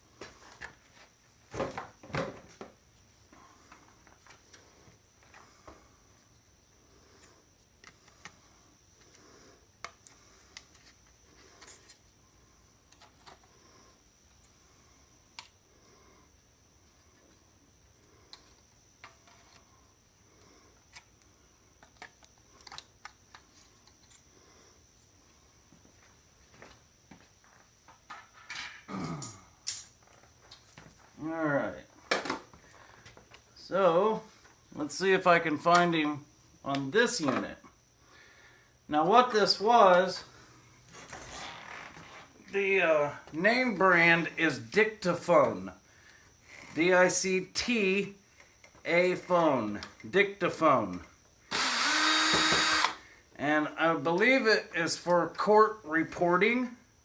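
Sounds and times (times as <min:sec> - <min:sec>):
faint high-pitched whine: 0:00.0 - 0:57.0.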